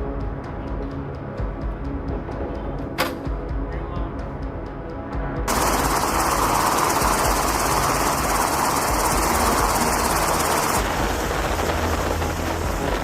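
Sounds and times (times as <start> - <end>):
background music: 0.0 - 13.0
aircraft engine noise: 5.5 - 13.0.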